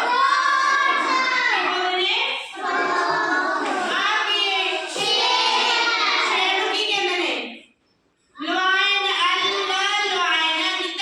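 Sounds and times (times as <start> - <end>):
children singing: 0.0 - 1.8, 2.5 - 7.0.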